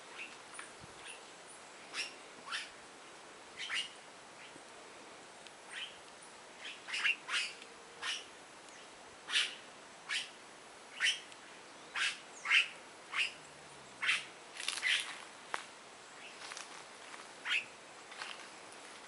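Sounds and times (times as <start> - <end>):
coatis chirping squeaks: 1.9 - 2.7, 3.6 - 4.5, 5.7 - 6.0, 6.6 - 8.3, 9.3 - 11.3, 11.9 - 13.4, 14.0 - 15.2, 17.4 - 17.7.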